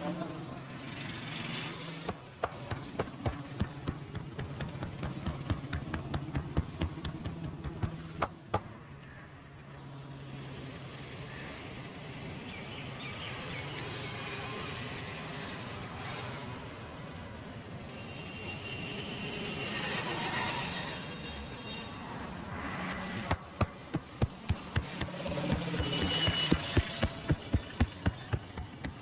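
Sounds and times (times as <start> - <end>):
hand strikes of massage: 2.1 - 8.7.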